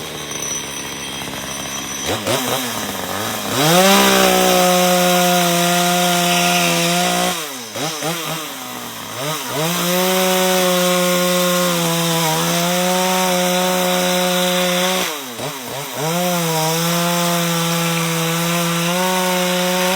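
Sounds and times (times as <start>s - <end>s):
chainsaw carving wood: 0.0s - 19.9s.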